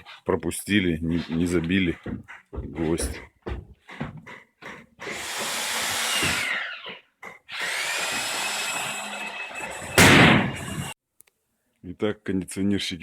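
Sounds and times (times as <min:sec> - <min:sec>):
power tool motor whine: 0:05.1 - 0:06.8, 0:07.5 - 0:10.0.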